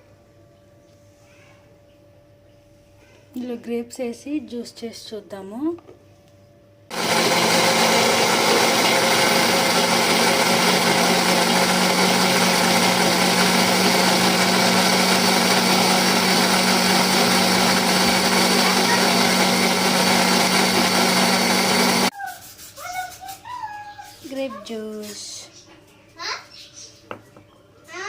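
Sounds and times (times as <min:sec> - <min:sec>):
juicer motor running: 0:06.9 - 0:22.1.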